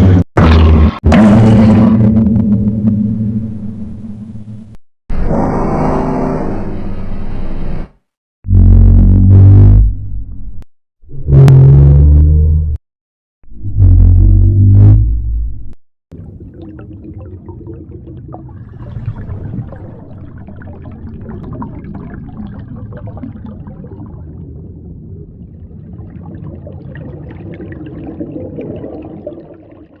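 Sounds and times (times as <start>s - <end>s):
watery gurgling rumble: 0.0s - 4.8s, 13.4s - 30.0s.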